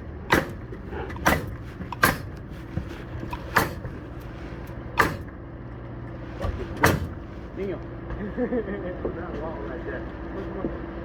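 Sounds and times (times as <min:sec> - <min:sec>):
steady low hum: 0:00.0 - 0:11.0
knocks on wall framing: 0:05.0 - 0:05.3, 0:06.4 - 0:07.3.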